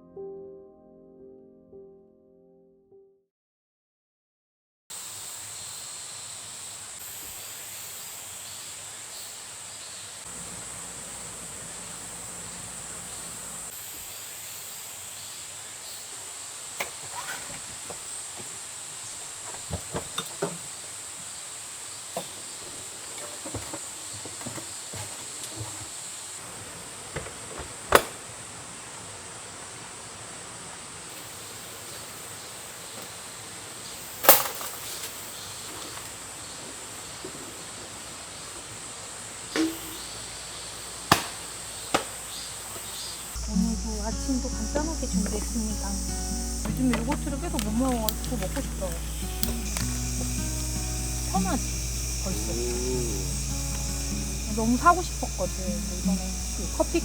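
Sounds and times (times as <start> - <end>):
insect chirring: 5.0 - 26.4, 28.3 - 57.0.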